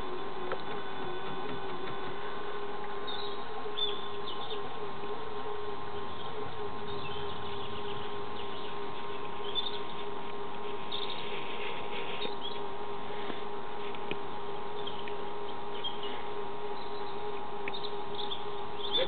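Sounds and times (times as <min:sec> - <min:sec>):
wavering mechanical hum: 0:00.0 - 0:19.0.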